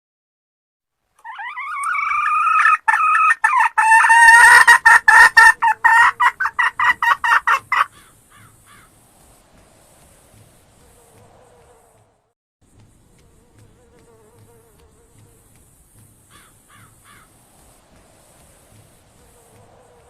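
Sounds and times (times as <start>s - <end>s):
hen cackling: 1.2s - 8.9s, 16.3s - 17.3s.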